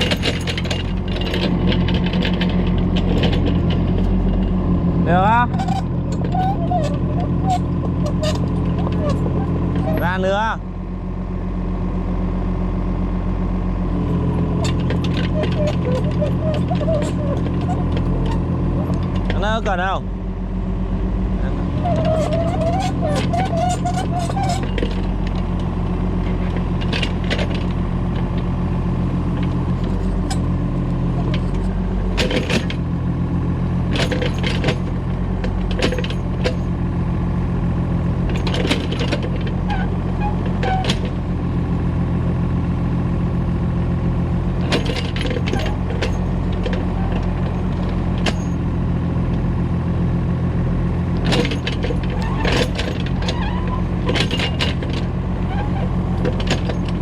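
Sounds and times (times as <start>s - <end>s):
excavator bucket clanking: 0.0s - 10.5s, 14.0s - 19.8s, 21.6s - 36.9s, 38.2s - 41.3s, 44.6s - 49.4s, 51.1s - 57.0s
diesel engine running: 0.0s - 57.0s.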